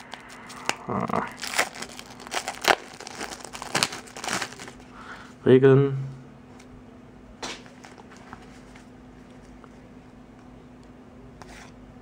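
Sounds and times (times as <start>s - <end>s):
faint steady hum: 0.0s - 12.0s
playing cards rustling: 1.4s - 4.8s.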